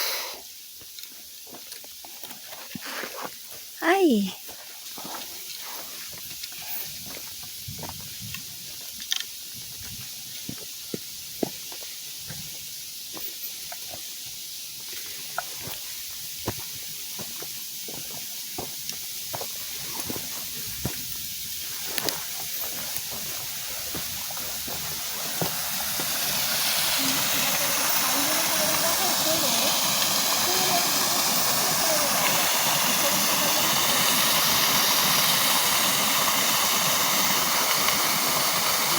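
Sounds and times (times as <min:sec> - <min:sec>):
steady hiss: 0:00.0 - 0:38.9
rustling of brush and leaves: 0:00.4 - 0:03.8, 0:04.4 - 0:38.9
footsteps on rough trail: 0:00.7 - 0:03.8, 0:04.4 - 0:28.9
waterfall rushing: 0:21.6 - 0:38.9.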